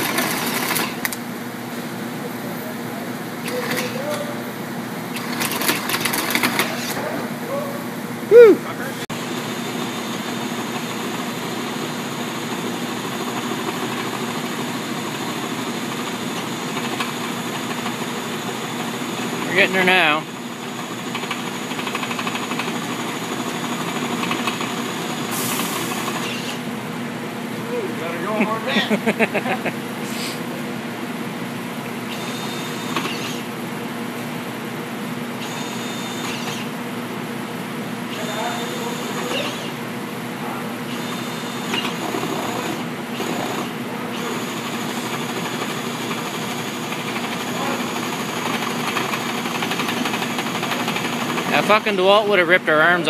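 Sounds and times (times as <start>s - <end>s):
cordless drill grinding through metal: 21.2s - 26.7s, 32.1s - 33.5s, 35.4s - 36.8s, 38.1s - 39.8s, 40.9s - 51.7s
high cutting squeal: 25.4s - 26.6s, 32.1s - 33.5s, 35.4s - 36.8s, 38.1s - 39.8s.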